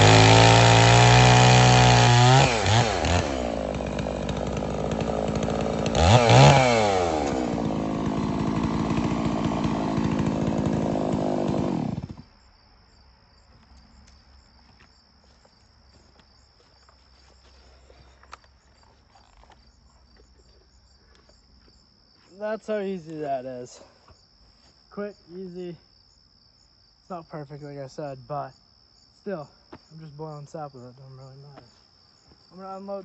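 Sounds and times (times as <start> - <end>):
chainsaw revving: 0.0 - 12.3
cricket trill: 7.5 - 33.0.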